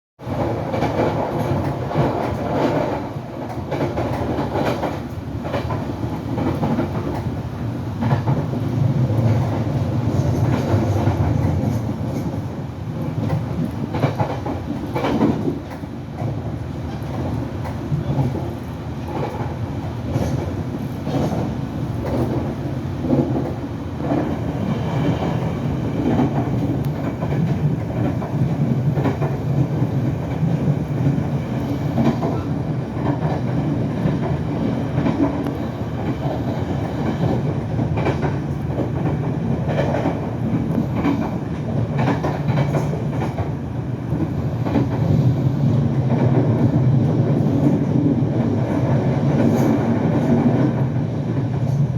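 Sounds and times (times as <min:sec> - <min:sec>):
train wheels rumbling on rail: 0:00.2 - 0:51.9.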